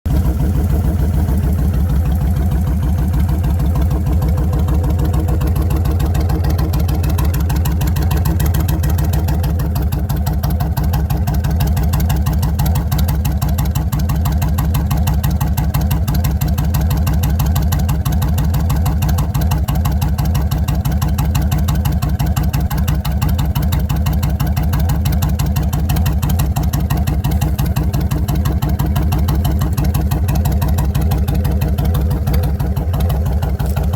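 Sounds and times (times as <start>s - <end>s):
motorcycle engine idling: 0.0s - 33.9s.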